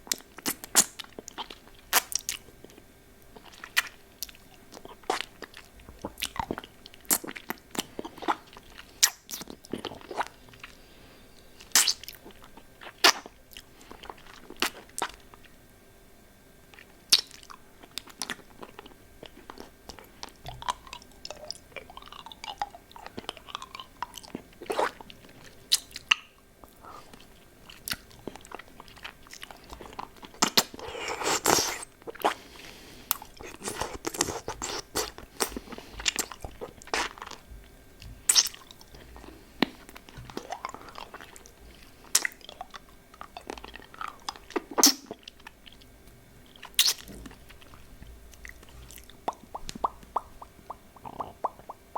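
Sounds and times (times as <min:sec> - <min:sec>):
sucking and licking lollipop: 0:27.1 - 0:32.4, 0:33.1 - 0:37.4, 0:38.3 - 0:41.5, 0:46.5 - 0:51.9
mouth clicks and smacks: 0:38.0 - 0:38.9, 0:46.6 - 0:47.3, 0:48.4 - 0:51.9.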